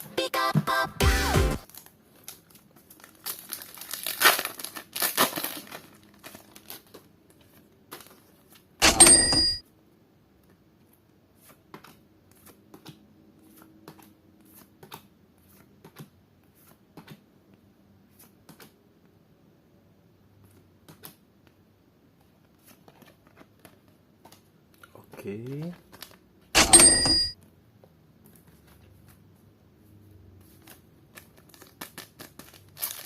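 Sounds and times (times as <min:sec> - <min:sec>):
foil crinkling: 0:01.6 - 0:07.0, 0:30.6 - 0:33.0
foil pack tearing: 0:01.7 - 0:06.9, 0:31.4 - 0:33.0.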